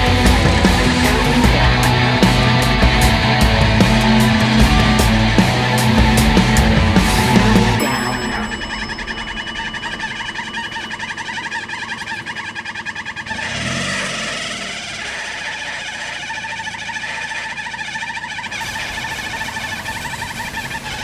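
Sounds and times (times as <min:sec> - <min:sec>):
engine running and revving: 0:00.0 - 0:07.9, 0:09.5 - 0:21.0.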